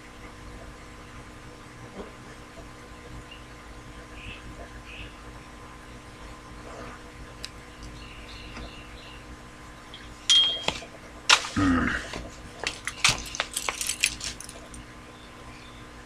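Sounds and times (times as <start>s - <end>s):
small hard objects clinking: 12.6s - 14.8s.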